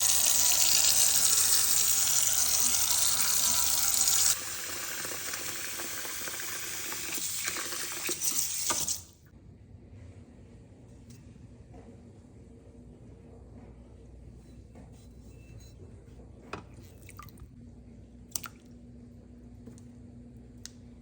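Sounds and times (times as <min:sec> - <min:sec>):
tap water running into sink: 0:00.0 - 0:09.0.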